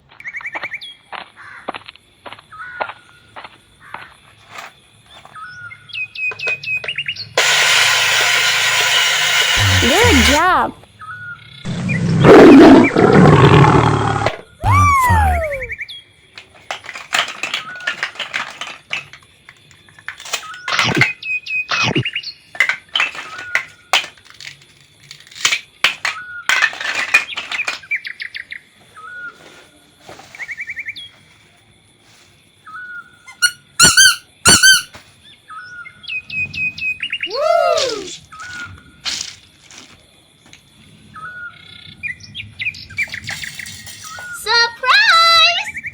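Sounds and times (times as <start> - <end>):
noisy bursts: 7.4 - 10.8, 11.7 - 15.7
short chirps: 14.6 - 15.7
whistle sliding down in pitch: 14.6 - 15.7.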